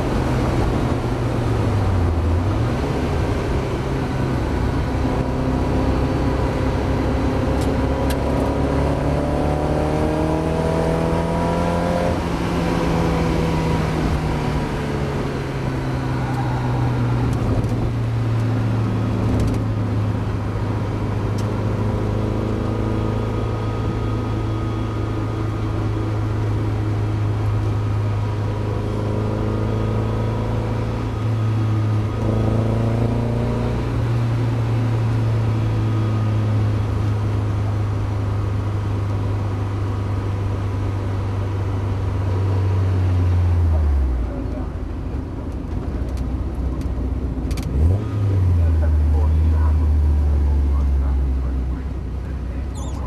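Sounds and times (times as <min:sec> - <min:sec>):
race car engine revving: 0:00.2 - 0:44.5, 0:47.4 - 0:53.0.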